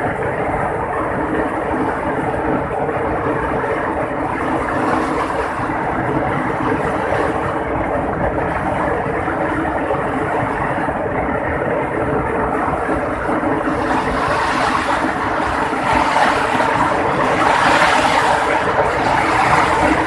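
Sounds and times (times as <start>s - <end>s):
heavy rain pouring: 3.2s - 7.9s, 12.4s - 20.0s.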